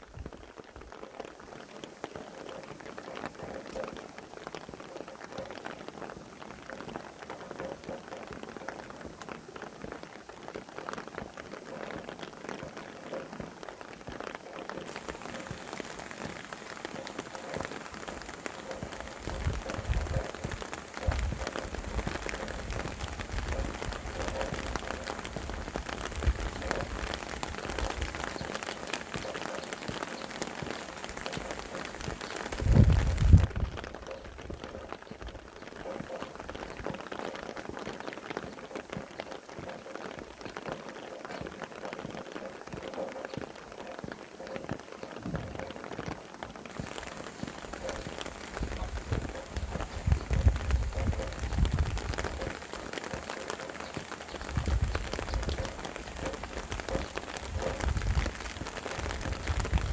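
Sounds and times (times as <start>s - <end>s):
rain drops pattering: 0.0s - 59.9s
low wind gusts rumbling: 14.8s - 36.8s, 46.7s - 59.9s.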